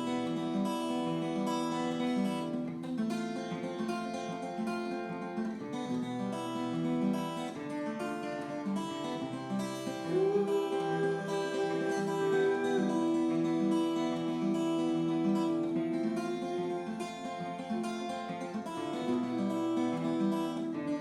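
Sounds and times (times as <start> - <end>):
acoustic guitar strumming: 0.0 - 21.0.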